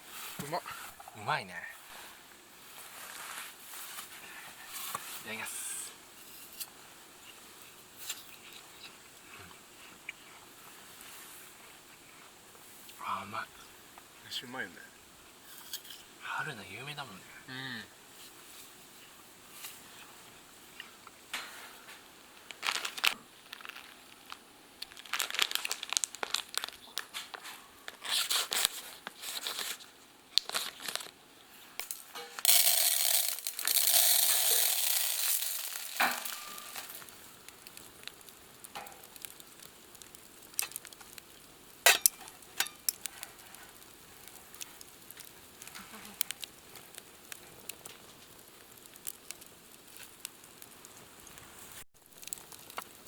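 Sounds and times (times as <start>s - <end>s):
food sizzling on hot pan: 0.0s - 8.8s, 31.8s - 53.0s
crinkly rustling: 1.8s - 5.3s, 21.5s - 53.0s.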